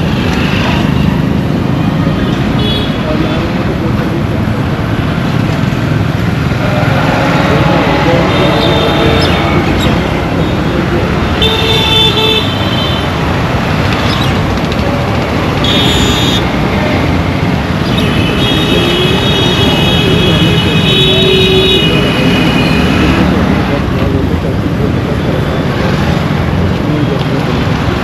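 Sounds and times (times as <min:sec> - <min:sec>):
road traffic rumble: 0:00.0 - 0:28.0
vehicle horns honking: 0:02.6 - 0:03.0, 0:08.0 - 0:09.6, 0:11.3 - 0:13.2, 0:15.6 - 0:16.5, 0:17.8 - 0:23.3.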